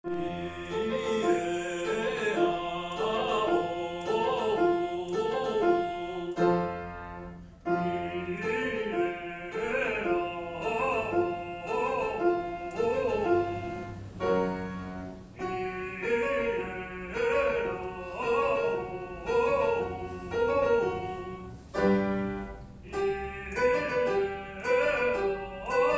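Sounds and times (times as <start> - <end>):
piano accompaniment: 0.0 - 25.9
operatic voice singing with vibrato: 0.1 - 7.1, 7.7 - 14.1, 15.3 - 21.5, 22.8 - 25.9.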